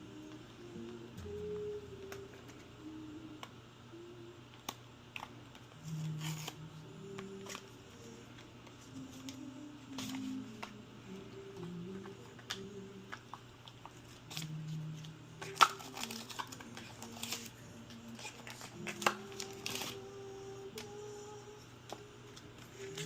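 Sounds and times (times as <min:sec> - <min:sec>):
packaging crinkling and tearing: 0:04.6 - 0:06.6, 0:12.3 - 0:20.2
soft background music: 0:14.3 - 0:23.0.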